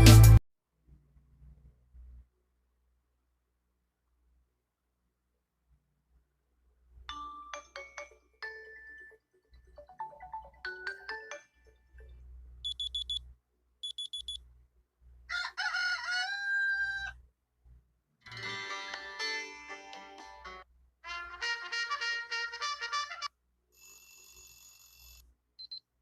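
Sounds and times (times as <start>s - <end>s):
chiming melodic notes: 7.1s - 12.2s
rapid high electronic beeps: 13.8s - 14.4s
rooster crow tone: 15.3s - 17.2s.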